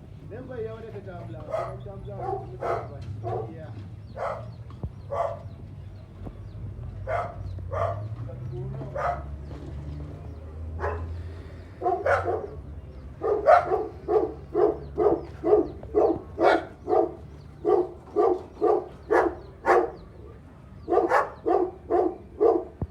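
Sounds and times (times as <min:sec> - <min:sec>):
dog barking: 0:01.4 - 0:05.6, 0:07.0 - 0:08.2, 0:08.8 - 0:09.4, 0:10.7 - 0:11.2, 0:11.8 - 0:22.9.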